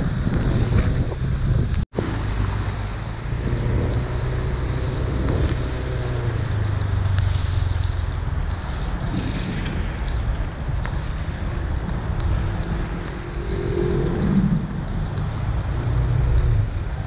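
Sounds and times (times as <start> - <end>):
vehicle engine running: 0.0 - 17.0
rain and water hiss: 2.0 - 17.0.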